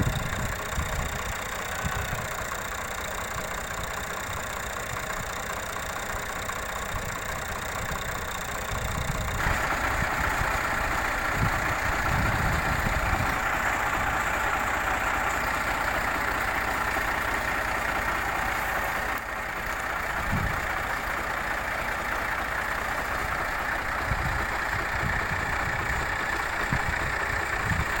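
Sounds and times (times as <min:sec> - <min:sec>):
tractor engine running: 0:00.0 - 0:28.0.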